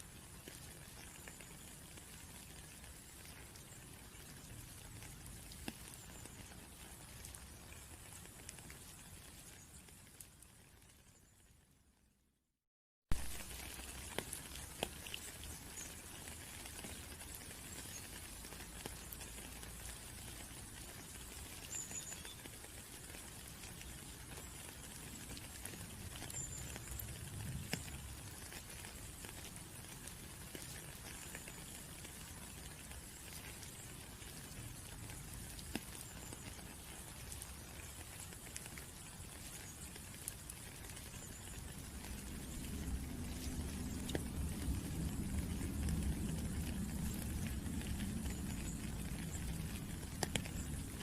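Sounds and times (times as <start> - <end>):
raindrops tapping: 0.0 - 11.1, 13.1 - 51.0
rain hissing: 13.1 - 51.0.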